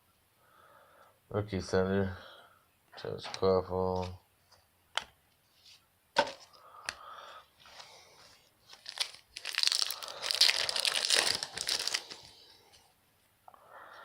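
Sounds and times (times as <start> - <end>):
card pack wrapper crinkling and tearing: 8.6 - 12.5.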